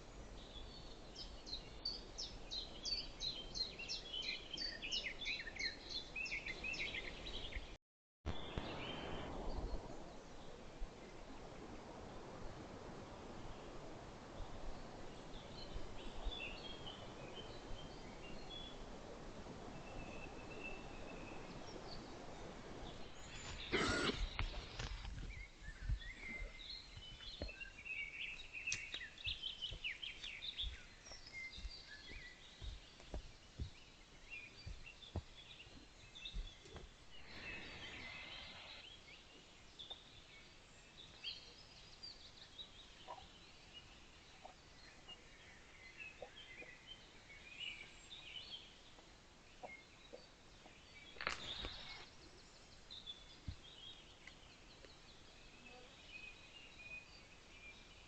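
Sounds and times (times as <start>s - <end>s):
birds chirping and singing: 23.0s - 39.9s
loud noisy call or cough: 23.7s - 24.3s.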